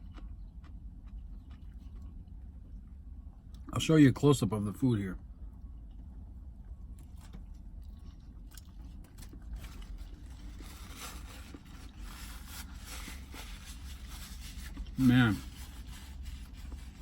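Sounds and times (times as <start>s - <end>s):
paper wrapper rustling: 9.1s - 17.0s.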